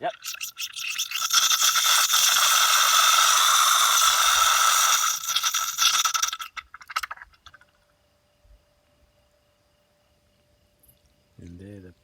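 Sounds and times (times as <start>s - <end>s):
release valve hissing and sputtering: 0.0s - 7.1s.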